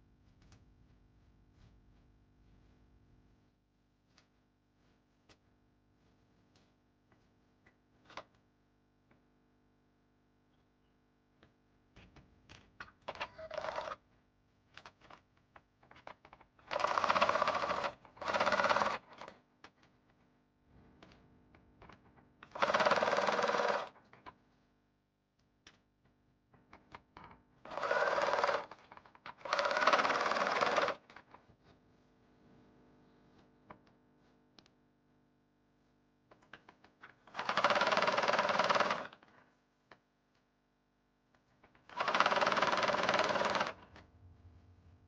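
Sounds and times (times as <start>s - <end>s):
sewing machine stitching: 13.2s - 14.0s, 16.7s - 19.3s, 22.5s - 23.9s, 27.7s - 28.8s, 29.4s - 31.0s, 37.3s - 39.2s, 41.9s - 43.8s.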